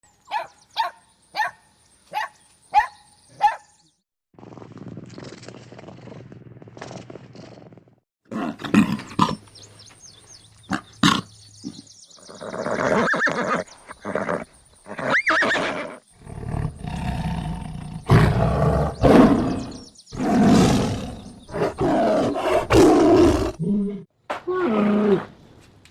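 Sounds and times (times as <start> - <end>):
animal barks: 0.3 - 3.7
animal roars and growls: 16.2 - 25.3.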